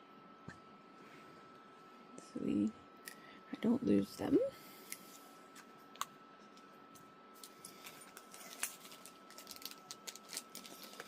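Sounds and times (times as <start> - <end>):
packaging rustling: 7.4 - 11.0.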